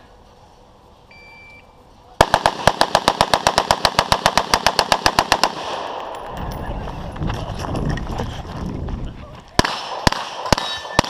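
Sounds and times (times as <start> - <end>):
rifle automatic burst: 2.2 - 6.1.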